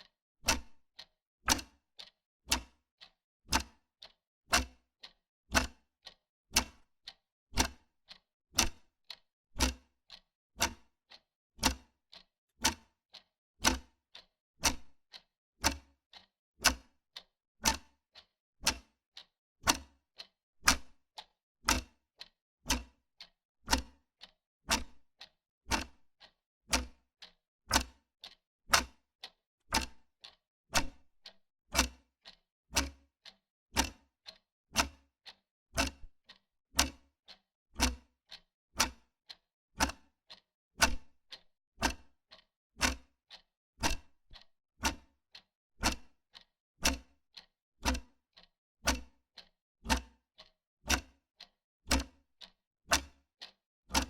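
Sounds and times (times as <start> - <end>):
wall clock ticking: 0.5 - 2.8, 5.6 - 6.8, 11.6 - 12.8, 13.6 - 17.0, 17.6 - 20.0, 20.7 - 22.0, 23.7 - 25.0, 25.7 - 47.0, 48.3 - 54.0.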